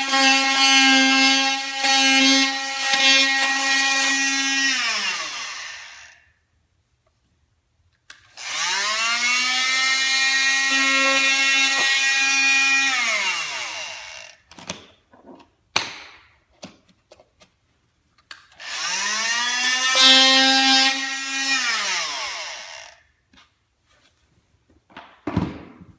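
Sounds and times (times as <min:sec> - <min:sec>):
oscillating multi-tool motor whine: 0:00.0 - 0:06.2, 0:08.4 - 0:14.4, 0:18.6 - 0:23.0.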